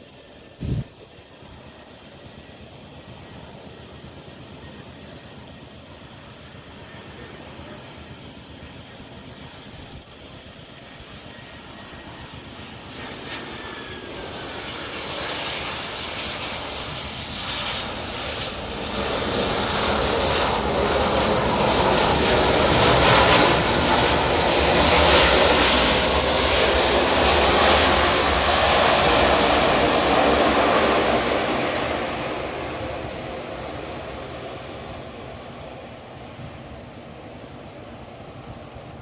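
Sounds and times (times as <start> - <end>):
airliner engines roaring: 0.0 - 39.0.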